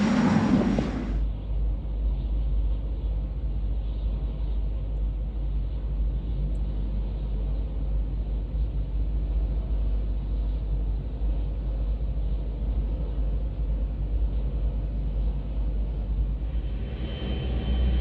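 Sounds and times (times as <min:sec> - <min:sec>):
low rumble: 0:00.0 - 0:01.4, 0:14.6 - 0:18.0.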